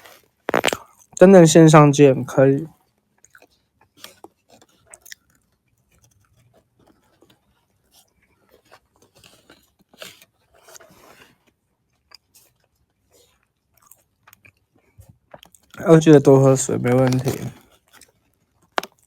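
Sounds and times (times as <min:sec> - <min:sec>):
person chewing and crunching: 0:00.0 - 0:01.2, 0:03.2 - 0:19.0
mouth clicks: 0:00.5 - 0:01.0.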